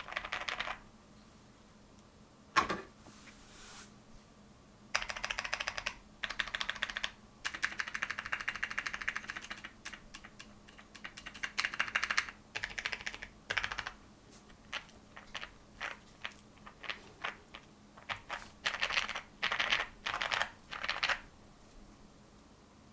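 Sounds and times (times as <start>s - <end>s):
typing on mechanical keyboard: 0.0s - 0.8s, 5.0s - 14.0s, 14.7s - 21.2s.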